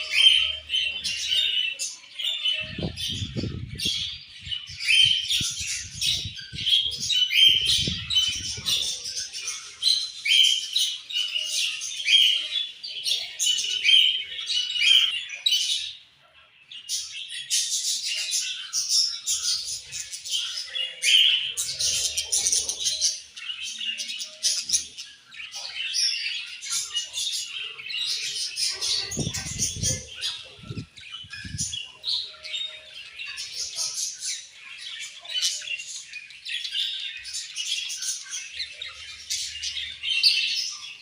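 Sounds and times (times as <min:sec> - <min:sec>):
budgerigars chattering and chirping: 0:00.0 - 0:16.0, 0:16.8 - 0:41.0.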